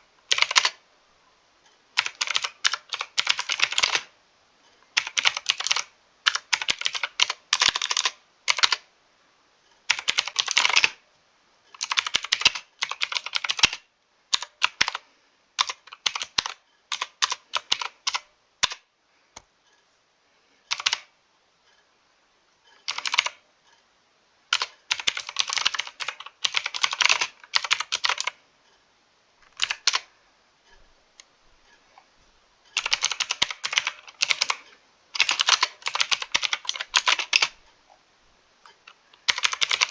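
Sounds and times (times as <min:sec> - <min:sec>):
mechanical keyboard typing: 0:00.3 - 0:00.8, 0:02.0 - 0:04.1, 0:05.0 - 0:08.9, 0:09.9 - 0:11.0, 0:11.7 - 0:18.8, 0:20.7 - 0:21.1, 0:22.8 - 0:23.4, 0:24.5 - 0:28.4, 0:29.4 - 0:30.1, 0:32.8 - 0:37.6, 0:38.7 - 0:39.9.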